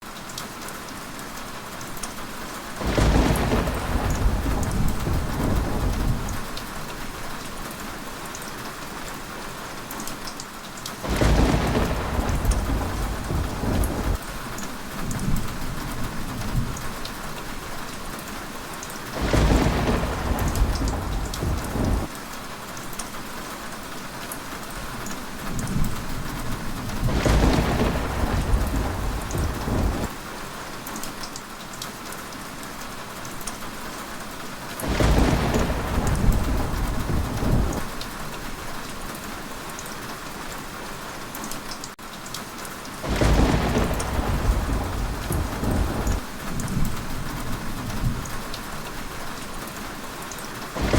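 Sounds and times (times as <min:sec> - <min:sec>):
heavy rain falling: 0:00.0 - 0:50.9
thunder rumbling: 0:02.8 - 0:07.5, 0:11.0 - 0:17.8, 0:19.1 - 0:22.1, 0:25.4 - 0:30.1, 0:34.8 - 0:38.8, 0:43.0 - 0:49.7.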